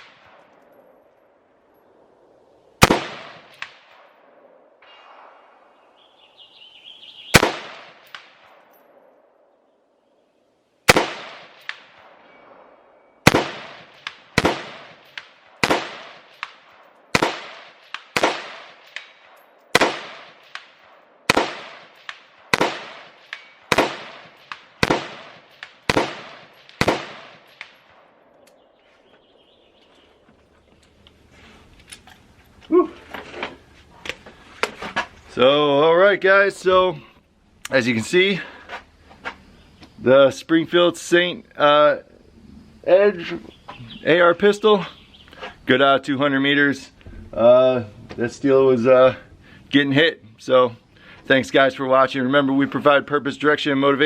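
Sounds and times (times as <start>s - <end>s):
gunshots: 2.8s - 4.2s, 7.3s - 8.7s, 10.9s - 12.2s, 13.2s - 28.1s.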